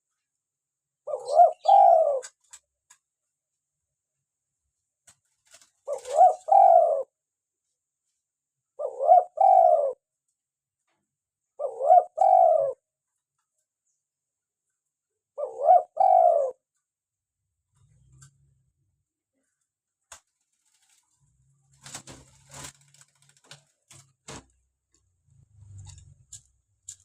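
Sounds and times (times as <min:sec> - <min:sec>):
dove cooing: 0:01.1 - 0:02.4, 0:05.8 - 0:07.1, 0:08.8 - 0:10.0, 0:11.6 - 0:12.8, 0:15.4 - 0:16.6.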